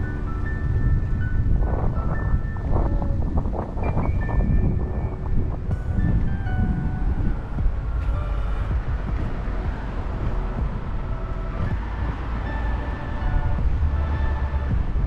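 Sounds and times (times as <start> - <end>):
faint musical notes: 0.0 - 15.0
wind buffeting microphone: 0.0 - 15.0.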